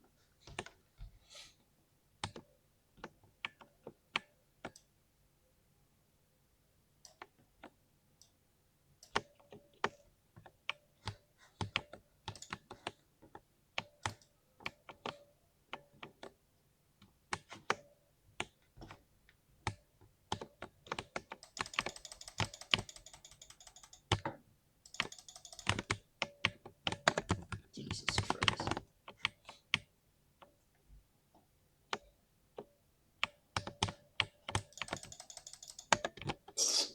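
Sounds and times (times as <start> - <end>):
mechanical keyboard typing: 11.1 - 13.0, 19.7 - 29.4, 33.2 - 36.5.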